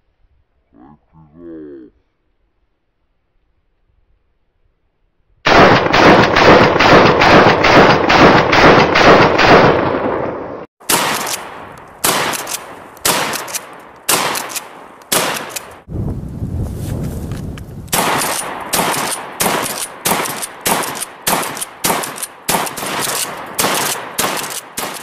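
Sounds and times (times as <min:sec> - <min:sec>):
shotgun shots: 0:05.5 - 0:15.9, 0:17.9 - 0:25.0.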